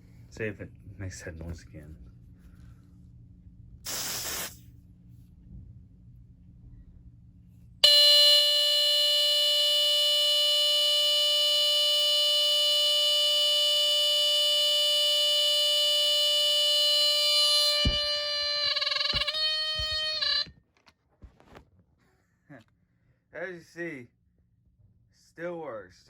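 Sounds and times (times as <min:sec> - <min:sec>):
aerosol spray hiss: 0:03.9 - 0:04.6
smoke alarm shrill tone: 0:07.8 - 0:20.6.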